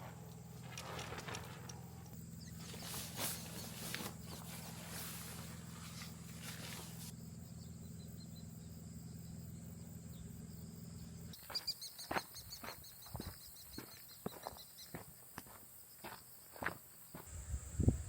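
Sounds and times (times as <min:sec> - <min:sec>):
steady low hum: 0:00.0 - 0:11.4, 0:17.3 - 0:18.0
insects chirping: 0:00.0 - 0:18.0.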